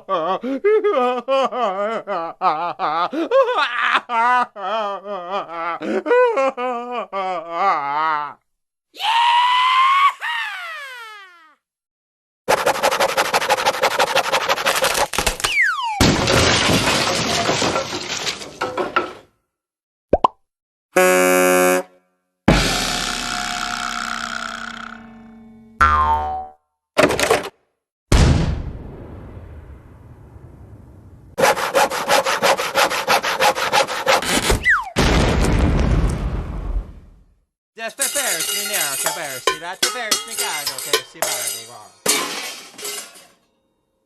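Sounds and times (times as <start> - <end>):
cartoon sawing sound effect: 31.4 - 34.9.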